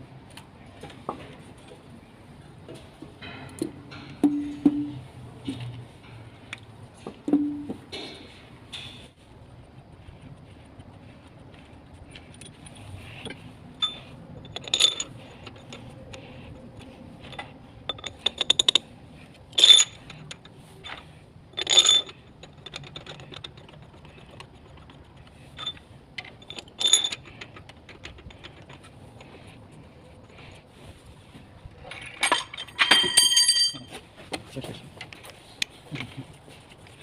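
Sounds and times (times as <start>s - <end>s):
metal objects clinking: 12.3s - 18.9s, 19.5s - 29.4s, 31.9s - 33.9s.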